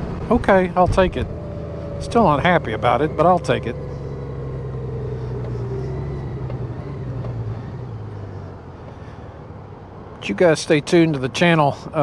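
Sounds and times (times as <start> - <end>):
motorcycle engine running: 0.0 - 8.4.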